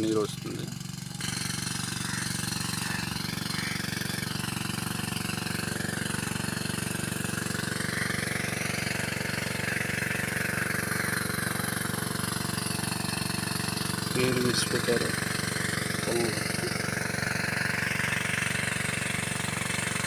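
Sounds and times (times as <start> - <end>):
engine running steadily: 0.0 - 20.0.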